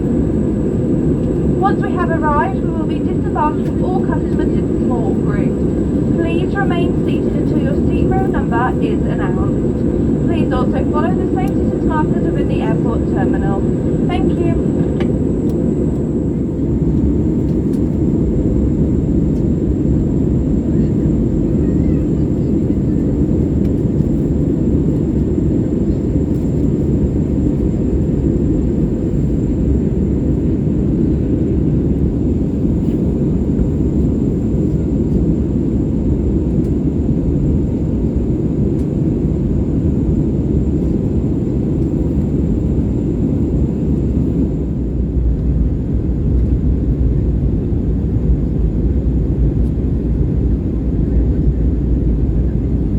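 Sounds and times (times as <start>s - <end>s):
jet engines roaring: 0.0s - 52.9s.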